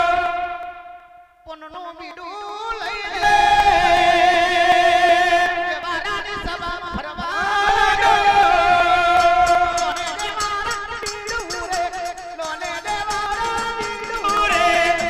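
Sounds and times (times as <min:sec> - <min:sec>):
person singing long wavering notes: 0:03.1 - 0:15.0
instrumental accompaniment: 0:08.0 - 0:15.0.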